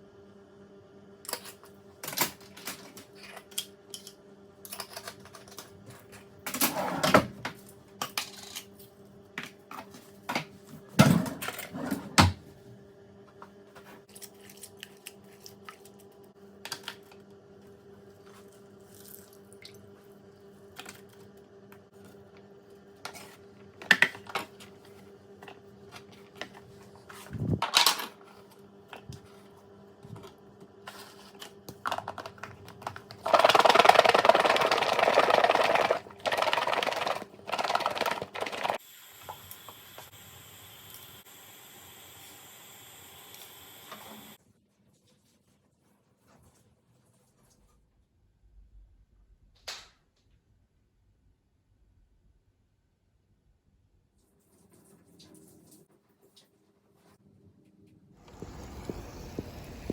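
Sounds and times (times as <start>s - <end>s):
steady low hum: 58.2s - 59.9s.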